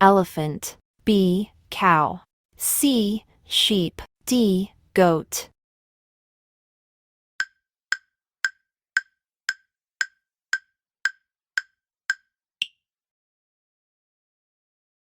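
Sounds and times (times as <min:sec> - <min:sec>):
wood-block-like timer ticks: 0:07.4 - 0:12.8.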